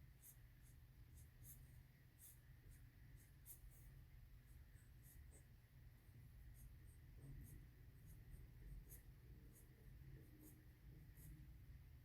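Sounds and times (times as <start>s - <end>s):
drawing tool scratching on paper: 0.0s - 5.5s, 6.4s - 11.6s
low steady hum: 0.0s - 12.0s.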